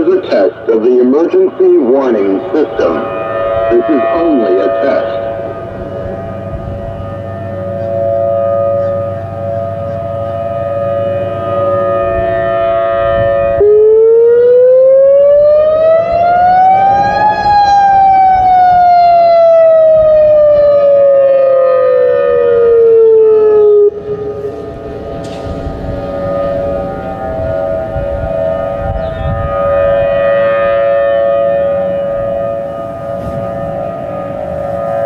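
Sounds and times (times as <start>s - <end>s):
mechanical sirens steady tones: 0.0s - 35.0s
rising and falling electronic siren: 0.0s - 35.0s.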